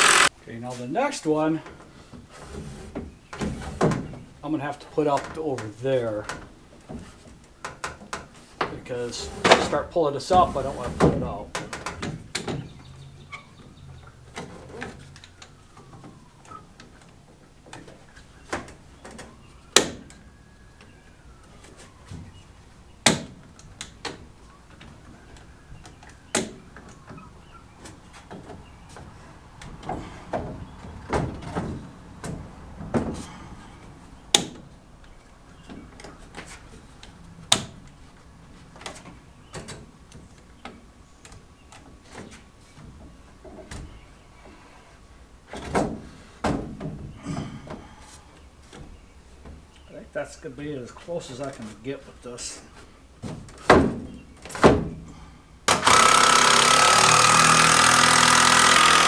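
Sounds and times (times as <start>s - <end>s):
lumber knocks and clacks: 5.0s - 12.9s, 27.8s - 33.4s, 45.5s - 48.0s, 53.2s - 55.0s.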